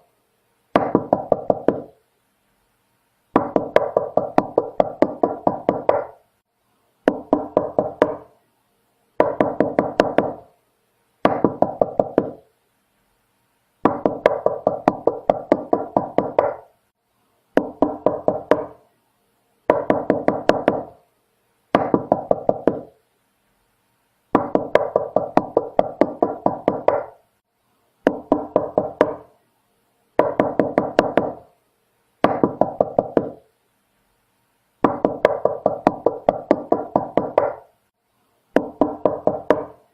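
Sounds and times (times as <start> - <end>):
knocking on a door: 0.8 - 1.9, 3.4 - 6.1, 7.1 - 8.3, 9.2 - 10.4, 11.2 - 12.4, 13.8 - 16.6, 17.6 - 18.8, 19.7 - 21.0, 21.8 - 22.9, 24.4 - 27.2, 28.1 - 29.3, 30.2 - 31.4, 32.2 - 33.4, 34.8 - 37.6, 38.6 - 39.8.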